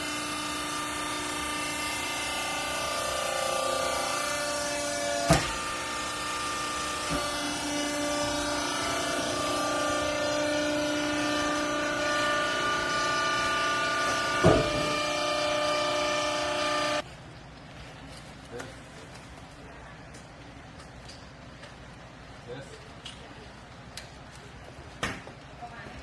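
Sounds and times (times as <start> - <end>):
hydraulic baler motor whine: 0.0 - 17.0
sharp knocks: 14.0 - 15.1.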